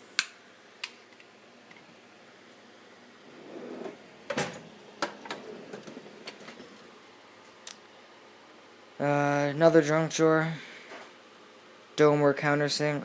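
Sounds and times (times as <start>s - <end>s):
metal drawer sliding: 3.3s - 6.9s
drawer clack: 3.5s - 6.8s.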